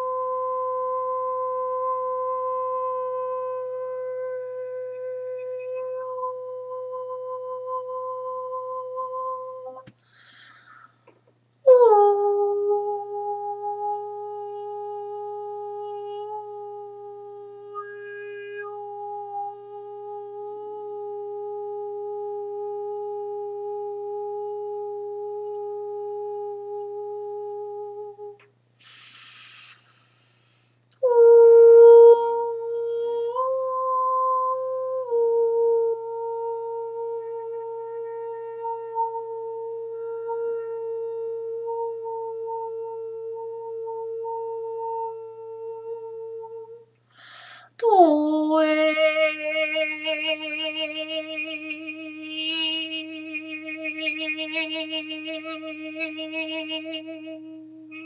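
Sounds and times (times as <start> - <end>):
woman humming long notes: 0.0 - 9.9, 11.6 - 28.5, 31.0 - 46.9, 47.7 - 58.0
breath: 10.0 - 11.1, 28.8 - 30.8, 47.1 - 47.8.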